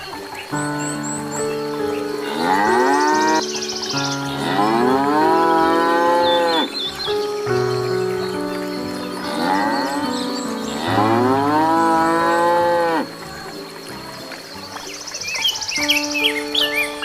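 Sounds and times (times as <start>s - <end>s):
cattle mooing: 2.2s - 3.4s, 4.4s - 6.7s, 9.3s - 10.0s, 10.7s - 13.1s.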